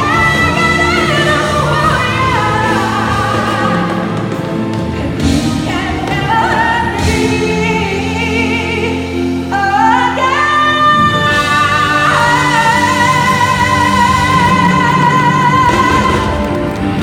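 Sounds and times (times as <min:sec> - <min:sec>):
band accompaniment: 0:00.0 - 0:17.0.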